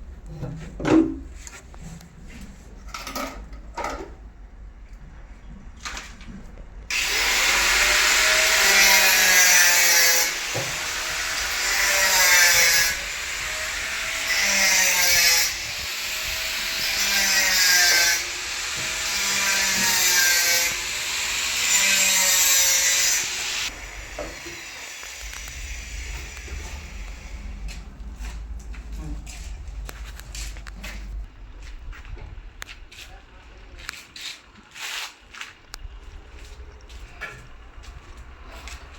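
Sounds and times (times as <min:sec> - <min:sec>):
tool rasping through material: 0:06.9 - 0:27.8.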